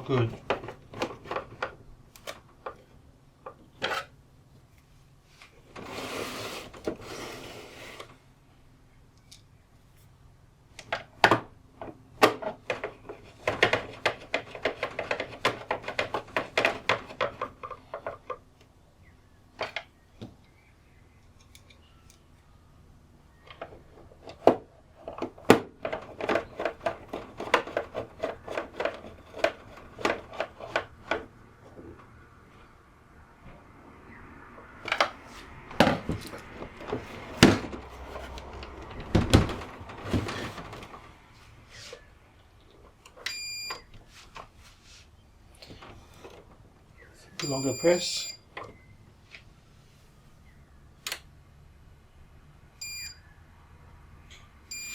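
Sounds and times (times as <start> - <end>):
rough scraping: 5.8 - 8.2, 35.2 - 42.1.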